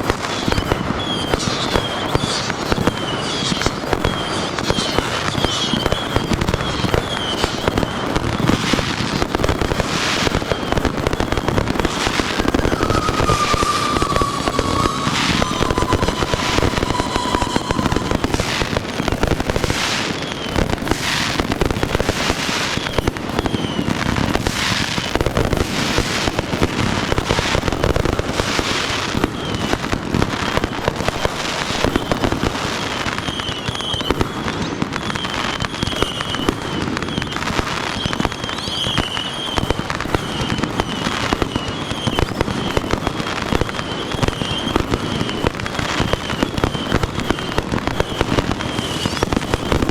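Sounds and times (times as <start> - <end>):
falling firework whistle: 0.0 - 49.9
fireworks bursting and crackling: 0.0 - 49.9
warbling high whistles: 11.5 - 19.8.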